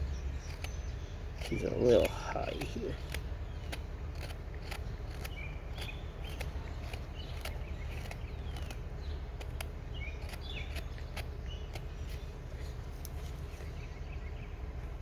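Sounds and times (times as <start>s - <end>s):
low outdoor rumble: 0.0s - 15.0s
songbirds chirping: 0.0s - 15.0s
sharp ticks: 0.4s - 12.2s.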